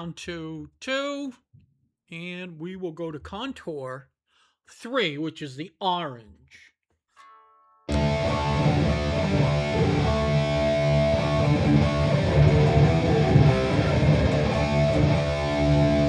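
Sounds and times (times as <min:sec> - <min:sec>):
electric guitar chords and notes: 0:07.2 - 0:16.0.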